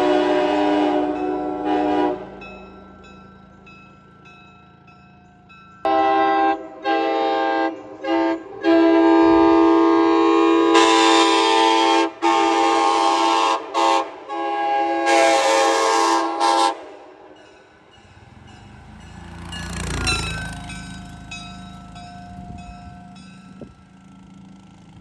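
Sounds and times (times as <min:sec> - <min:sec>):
locomotive air horn blasts: 0:00.0 - 0:02.6, 0:05.9 - 0:17.3.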